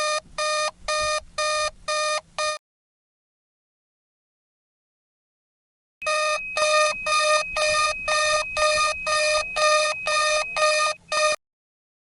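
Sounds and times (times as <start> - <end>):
pulsing electronic alarm tone: 6.0 - 11.4
steady high tone: 6.0 - 11.4.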